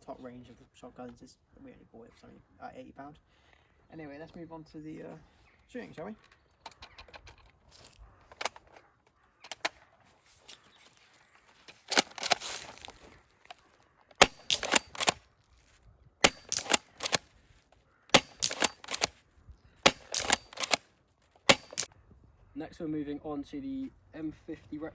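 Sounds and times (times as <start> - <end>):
airsoft shotgun racked and fired: 8.3 - 8.8, 11.7 - 12.9, 14.1 - 15.2, 16.2 - 17.3, 18.1 - 19.2, 19.9 - 21.9.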